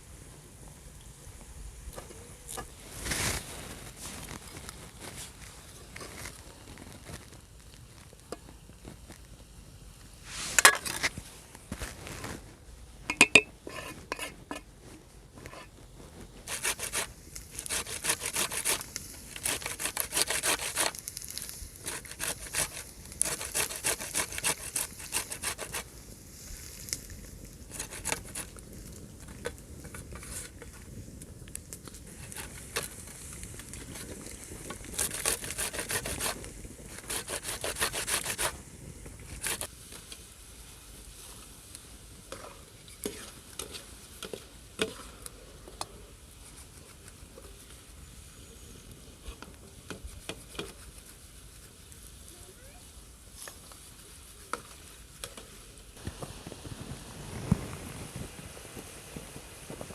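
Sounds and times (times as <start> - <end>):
rapid scraping strokes: 15.4 - 25.9, 27.7 - 28.5, 34.8 - 38.6, 39.2 - 39.7.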